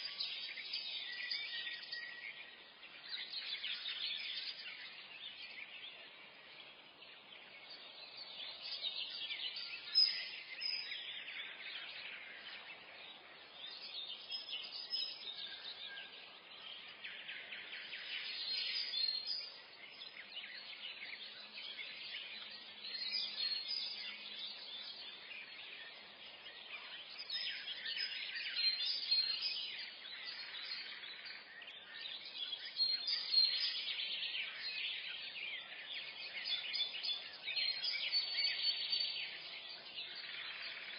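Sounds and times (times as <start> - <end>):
birds chirping and singing: 0.0 - 40.9.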